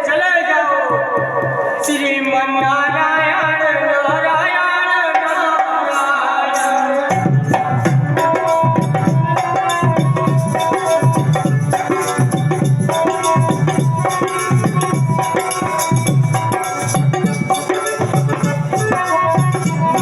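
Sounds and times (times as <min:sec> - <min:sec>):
steady drum beat: 0:05.1 - 0:20.0
sustained melody: 0:05.9 - 0:20.0.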